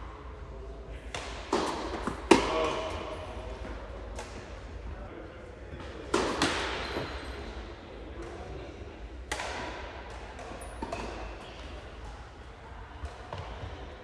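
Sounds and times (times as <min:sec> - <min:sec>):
tennis ball bouncing on court: 0:01.1 - 0:02.5
racket hitting tennis ball: 0:01.1 - 0:03.0, 0:06.1 - 0:07.0, 0:09.3 - 0:11.3.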